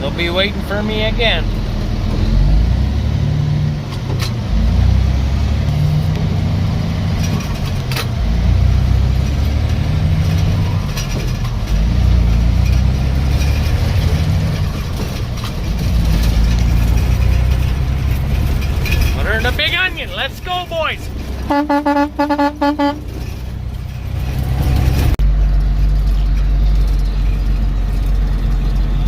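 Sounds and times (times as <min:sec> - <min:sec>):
truck diesel engine running: 0:00.0 - 0:29.0
cab rattles: 0:05.4 - 0:29.0.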